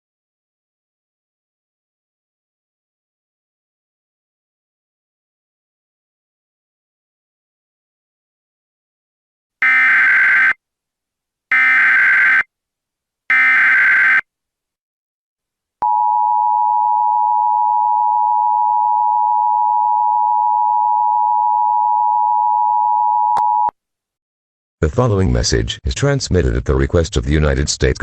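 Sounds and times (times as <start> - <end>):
screeching digital data bursts: 11.5 - 12.4, 13.3 - 14.2.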